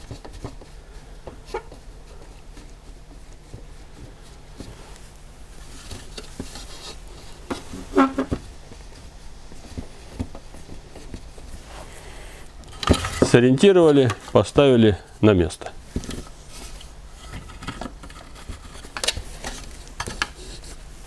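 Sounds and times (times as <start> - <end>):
squeak or scrape: 7.7 - 8.4.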